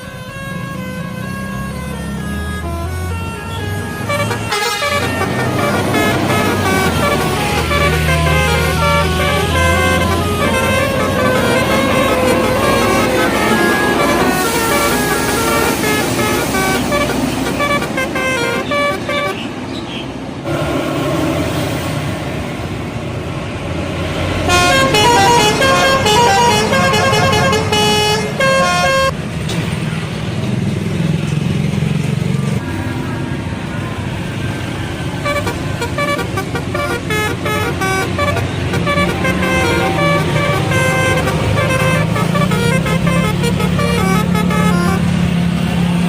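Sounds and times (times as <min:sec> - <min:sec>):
multi-tone bus air horn melody: 0:00.0 - 0:19.7, 0:24.2 - 0:29.2, 0:34.2 - 0:46.0
bus engine running: 0:00.0 - 0:46.0.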